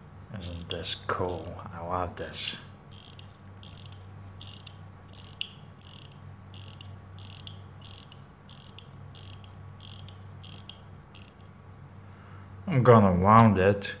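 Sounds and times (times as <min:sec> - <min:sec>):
steady low hum: 0:00.0 - 0:14.0
watch winding ratchet clicks: 0:00.4 - 0:01.6, 0:02.9 - 0:11.6.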